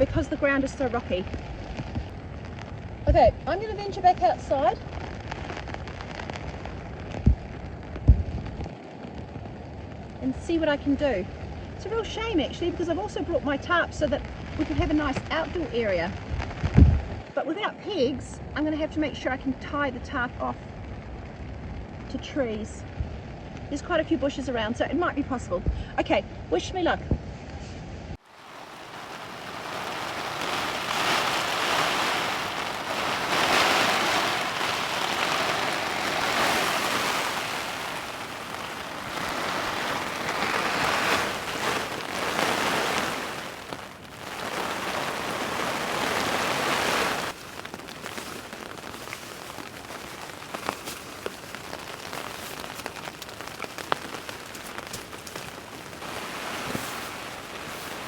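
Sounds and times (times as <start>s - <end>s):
heavy rain: 0.0s - 17.3s, 28.2s - 58.0s
single raindrops ticking: 28.2s - 58.0s.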